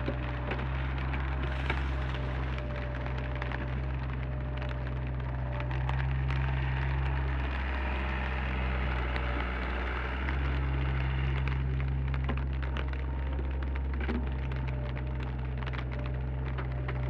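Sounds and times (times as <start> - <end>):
diesel engine droning: 0.0 - 17.0.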